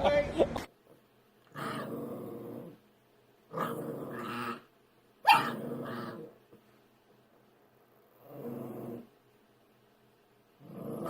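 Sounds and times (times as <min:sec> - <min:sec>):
dog growling: 0:01.5 - 0:02.8, 0:03.5 - 0:04.7, 0:05.3 - 0:06.5, 0:08.0 - 0:09.2, 0:10.6 - 0:11.0.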